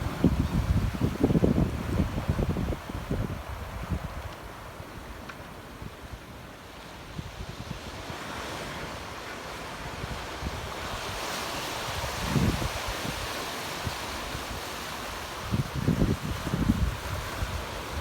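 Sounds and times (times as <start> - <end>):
wind buffeting the microphone: 0.0 - 5.2, 9.8 - 18.0
ocean surf on a beach: 0.0 - 18.0.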